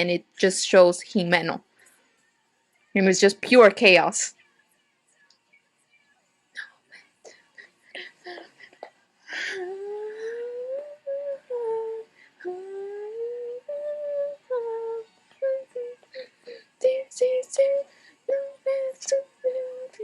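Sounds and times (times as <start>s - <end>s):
person singing unaccompanied: 6.6s - 20.0s.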